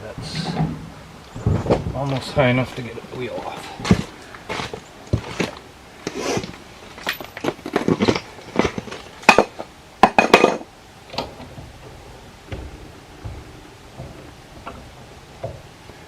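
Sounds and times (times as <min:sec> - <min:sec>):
metal tools clinking: 0:06.9 - 0:12.0.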